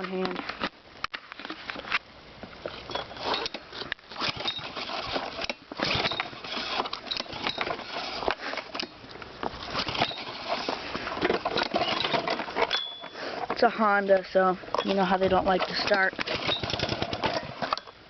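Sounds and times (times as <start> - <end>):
engine turning over rattling: 2.8 - 8.9, 9.6 - 12.7, 15.2 - 17.9
recoil pull-starter yanked: 15.8 - 17.9.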